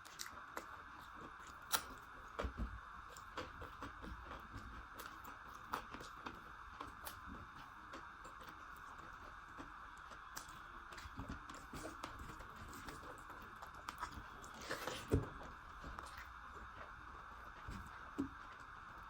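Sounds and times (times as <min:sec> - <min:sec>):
person chewing: 0:00.0 - 0:18.7.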